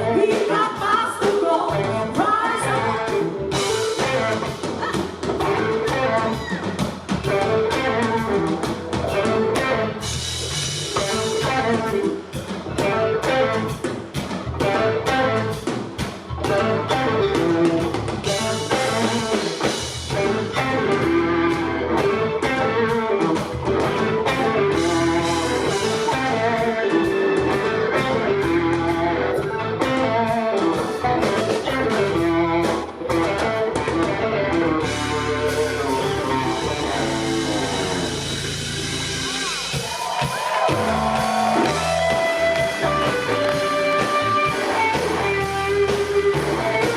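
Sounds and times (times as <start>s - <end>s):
electric guitar lead lines: 0.0s - 39.8s, 40.6s - 46.9s
drum kit: 0.0s - 46.9s.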